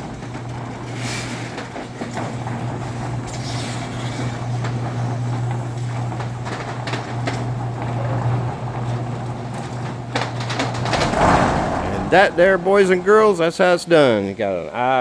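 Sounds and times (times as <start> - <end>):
garage door opener motor humming: 0.0 - 15.0
doors knocking and rattling: 5.5 - 14.3.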